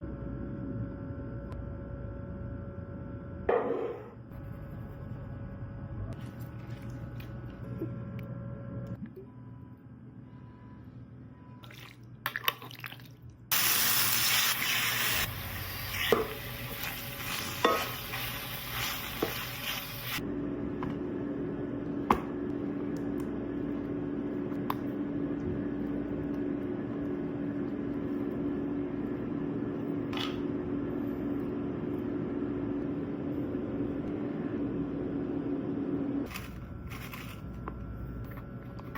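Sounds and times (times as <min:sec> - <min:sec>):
steady low hum: 0:00.0 - 0:11.6, 0:14.8 - 0:38.9
chicken sizzling in oil: 0:13.5 - 0:20.2.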